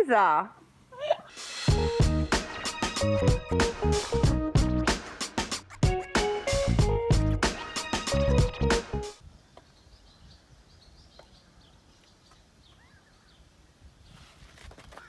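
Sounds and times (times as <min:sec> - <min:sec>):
burst of music: 0:01.3 - 0:09.2
small birds chirping: 0:09.3 - 0:14.2.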